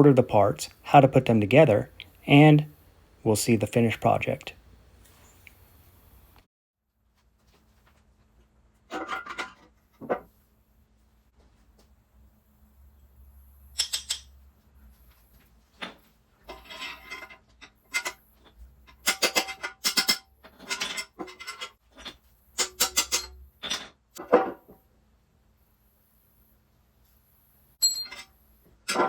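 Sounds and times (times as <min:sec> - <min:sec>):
metal tools clinking and scraping: 0:13.8 - 0:14.3, 0:15.8 - 0:18.2, 0:18.9 - 0:23.9, 0:27.8 - 0:29.0.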